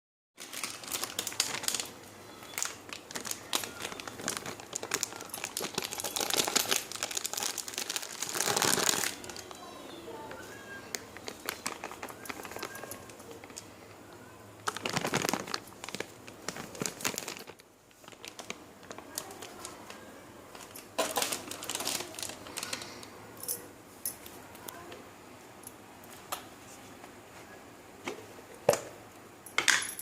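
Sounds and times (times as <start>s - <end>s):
crinkling and rustling: 0.4s - 14.0s, 14.6s - 24.9s
kitchen clicks and clinks: 29.5s - 30.0s.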